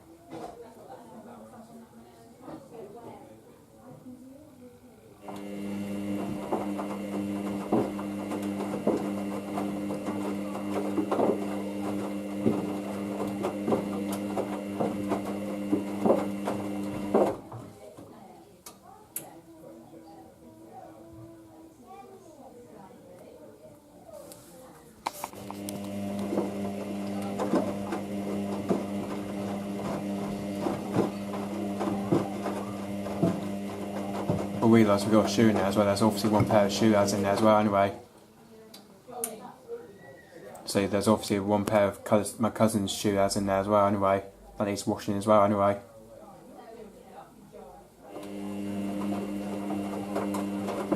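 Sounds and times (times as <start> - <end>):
washing machine motor humming: 5.2 - 17.5, 25.2 - 38.0, 48.1 - 50.9.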